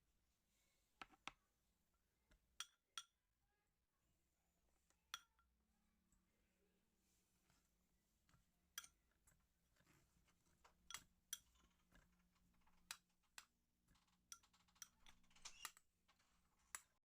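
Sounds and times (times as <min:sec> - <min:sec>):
utensils tapping against dishes: 0:10.7 - 0:12.1.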